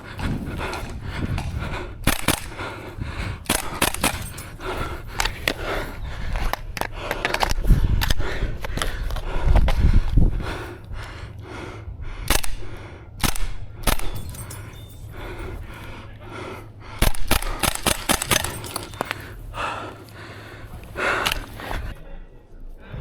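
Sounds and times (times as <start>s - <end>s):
heavy breathing: 0.0s - 23.0s
airsoft gunshots: 2.0s - 2.8s, 3.5s - 4.4s, 12.3s - 14.3s, 17.0s - 18.8s.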